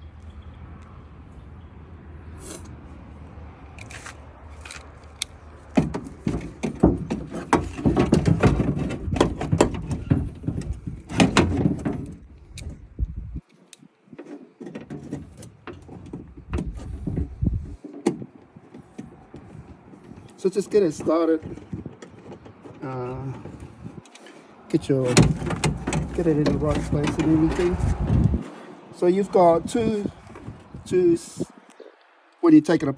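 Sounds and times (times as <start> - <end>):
metallic clanks and rattles: 5.1 - 12.9, 14.1 - 28.4.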